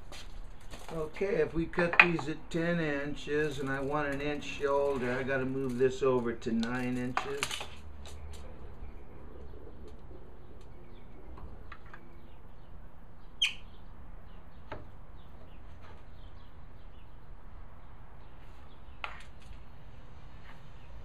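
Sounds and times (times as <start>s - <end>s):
birds chirping: 0.0s - 19.8s.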